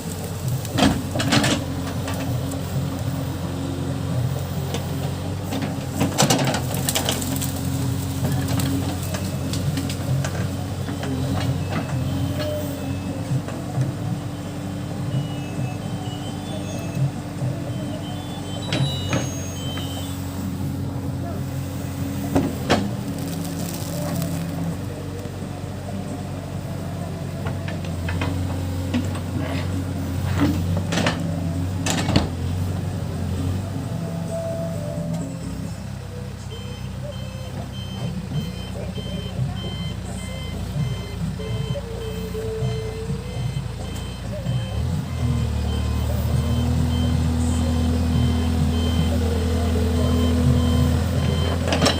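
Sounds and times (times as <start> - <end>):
diesel engine running: 0.0 - 51.9
reversing alarm beeping: 14.3 - 20.3, 36.5 - 51.9.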